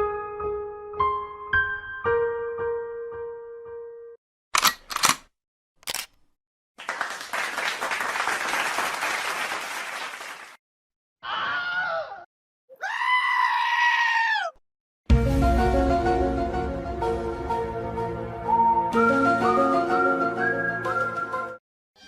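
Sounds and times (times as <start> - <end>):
music: 0.0 - 4.2, 15.1 - 21.6
sharp clicks: 4.6 - 6.3.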